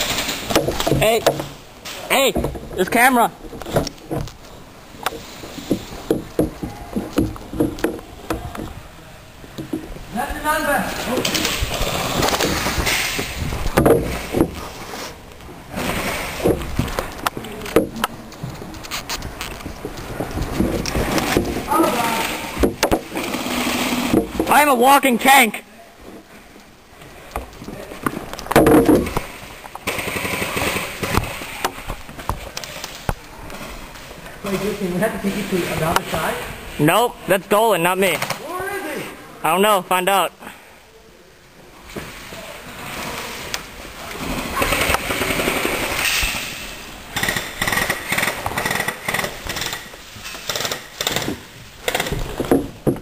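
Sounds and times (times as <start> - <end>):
airsoft guns firing full-auto: 29.8 - 31.2, 47.2 - 52.1.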